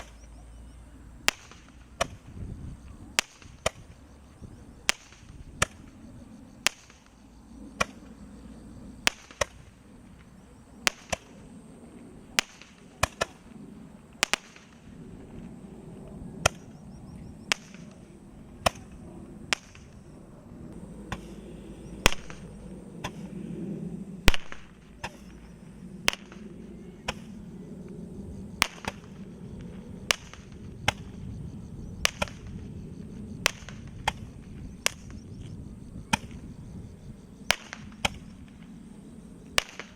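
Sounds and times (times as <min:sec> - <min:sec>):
low background rumble: 0:00.0 - 0:39.9
firework bangs: 0:04.8 - 0:06.0, 0:09.0 - 0:11.4, 0:14.1 - 0:15.4, 0:22.0 - 0:23.3, 0:24.2 - 0:27.4, 0:28.6 - 0:31.2, 0:37.5 - 0:38.7, 0:39.6 - 0:39.9.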